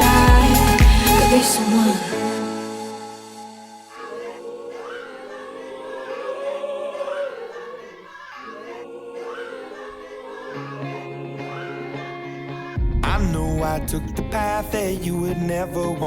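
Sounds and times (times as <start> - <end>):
sustained chords: 0.0 - 4.6
choir-like vocals holding long notes: 0.0 - 16.0.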